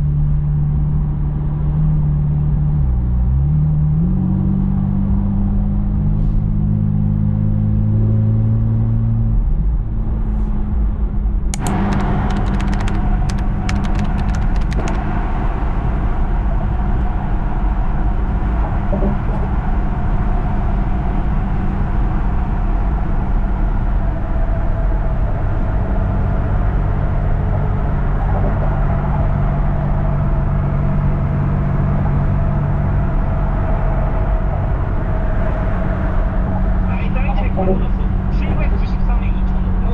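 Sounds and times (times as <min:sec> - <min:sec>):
clicking: 0:11.6 - 0:15.0.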